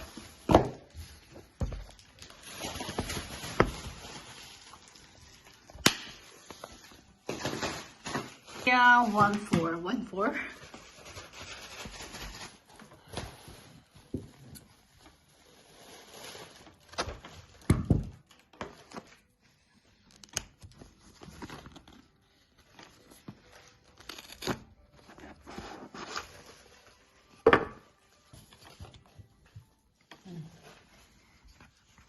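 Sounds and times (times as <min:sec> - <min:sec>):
packaging tearing and crinkling: 0:01.9 - 0:08.7, 0:22.9 - 0:26.8.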